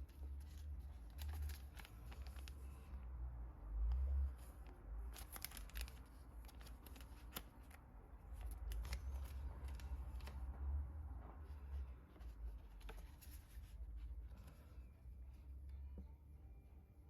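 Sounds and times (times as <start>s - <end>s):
packaging crinkling and rustling: 0.1s - 2.8s, 5.0s - 10.4s.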